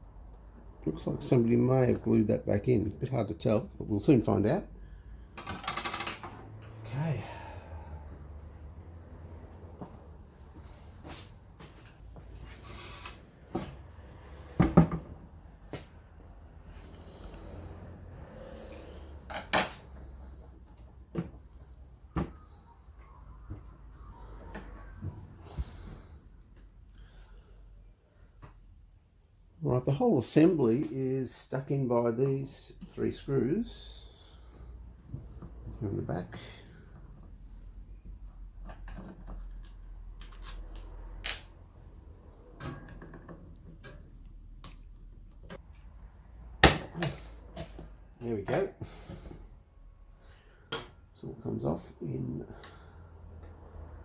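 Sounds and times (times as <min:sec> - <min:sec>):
fan parts clunking and knocking: 0:05.2 - 0:07.1, 0:13.4 - 0:16.4, 0:18.5 - 0:22.4, 0:42.3 - 0:45.7, 0:46.5 - 0:49.6.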